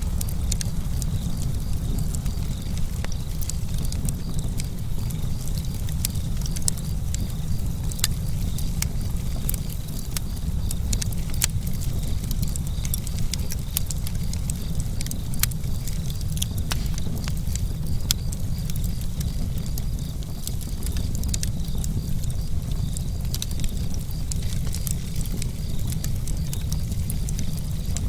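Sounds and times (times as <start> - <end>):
low rumble: 0.0 - 9.7
campfire crackling and popping: 0.0 - 28.0.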